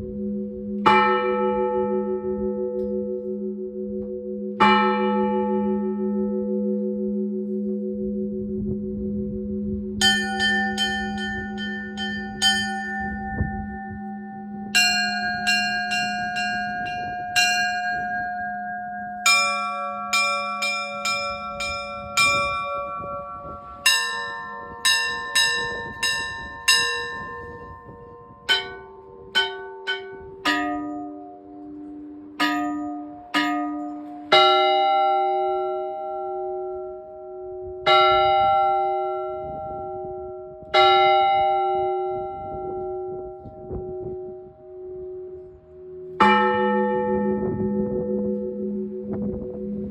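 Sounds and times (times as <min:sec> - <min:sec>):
deep bells ringing: 0:00.0 - 0:49.9
small bells struck in quick runs: 0:10.0 - 0:31.1.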